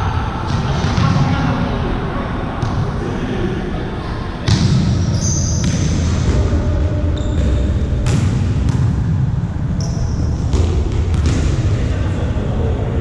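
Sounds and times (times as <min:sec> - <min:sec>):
volleyball hits and bounces: 0:04.5 - 0:06.6, 0:07.3 - 0:09.2, 0:10.4 - 0:11.7
shoes squeaking on floor: 0:05.1 - 0:05.6.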